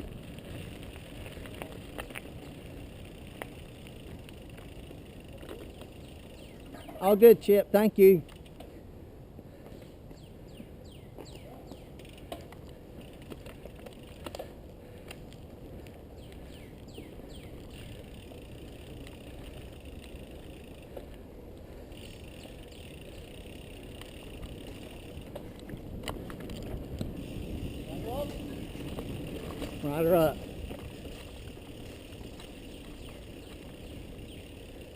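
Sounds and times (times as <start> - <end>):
bike tyres rolling on dirt: 0.0 - 34.9
birds calling with sliding notes: 5.7 - 7.2, 22.1 - 24.4, 32.3 - 34.8.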